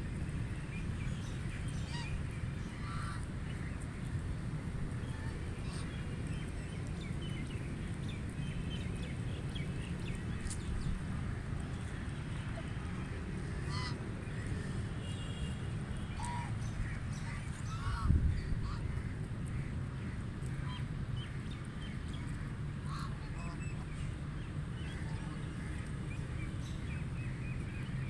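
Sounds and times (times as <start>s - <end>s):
steady low rumble: 0.0s - 15.0s, 15.8s - 28.0s
ducks quacking: 1.7s - 3.3s, 12.5s - 15.3s, 16.1s - 20.9s, 22.8s - 23.9s.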